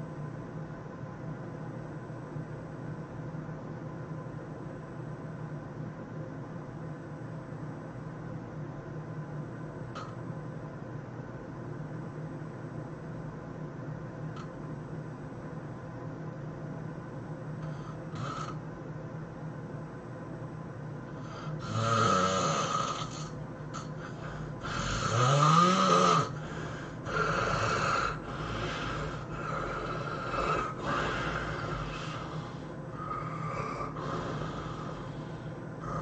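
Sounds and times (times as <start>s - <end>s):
person snoring loudly: 17.6s - 18.6s, 21.2s - 36.0s.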